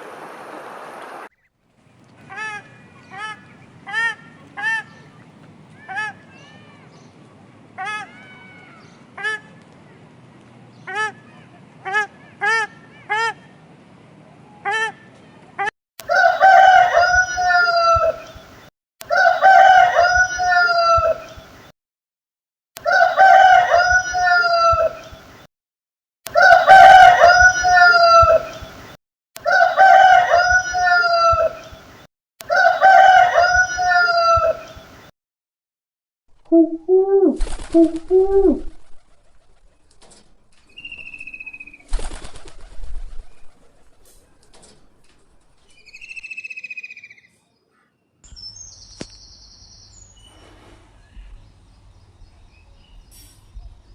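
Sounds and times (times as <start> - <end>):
rooster crowing: 16.0 - 18.4, 19.0 - 21.4, 22.8 - 25.2, 26.3 - 28.8, 29.4 - 31.8, 32.4 - 34.9
pigeon cooing: 26.4 - 28.7, 36.5 - 39.4
rustling noise: 37.4 - 40.8, 41.9 - 45.7.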